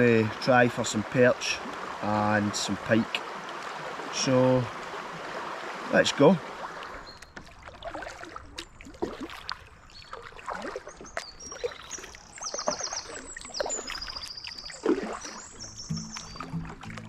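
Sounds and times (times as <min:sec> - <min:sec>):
paddle splashing in water: 0:00.0 - 0:17.0
birdsong trills: 0:06.9 - 0:07.4, 0:09.6 - 0:17.0
music: 0:15.9 - 0:17.0.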